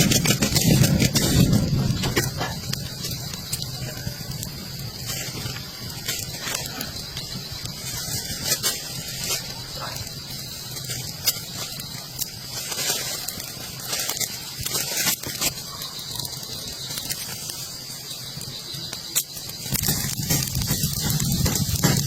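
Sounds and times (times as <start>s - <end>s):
deep rumbling: 0.0s - 12.0s
rain pattering: 0.0s - 22.0s.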